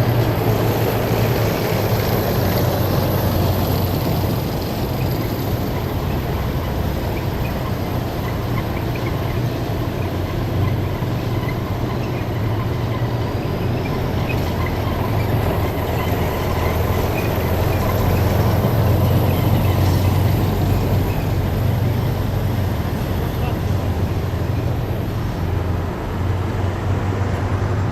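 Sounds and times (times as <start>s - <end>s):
heavy vehicle engines rumbling: 0.0s - 27.9s.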